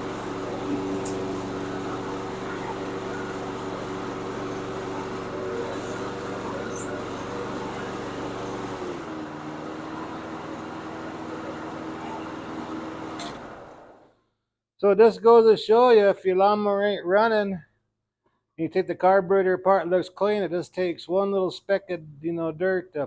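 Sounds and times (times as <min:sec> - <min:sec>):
lawn mower engine idling: 0:00.0 - 0:14.1.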